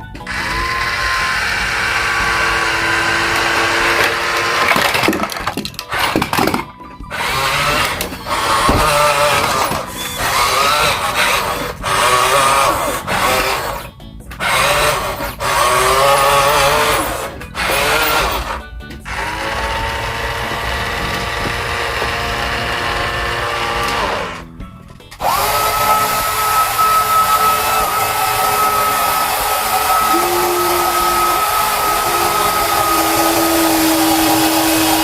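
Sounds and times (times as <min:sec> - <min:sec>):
toy electric motors whining: 0:00.0 - 0:35.0
higher steady whine: 0:25.7 - 0:35.0.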